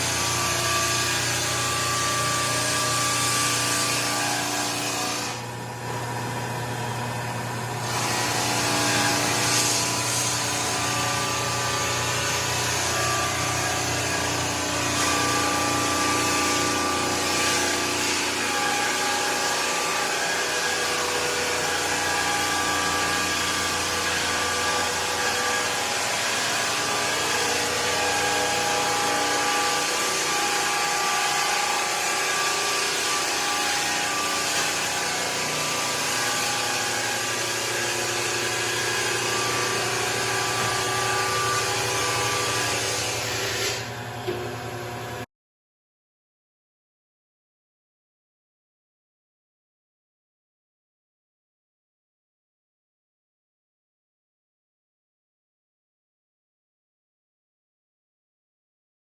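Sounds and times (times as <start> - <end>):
floor sander running: 0.0 - 45.2
sandpaper grinding floorboards: 7.8 - 43.9.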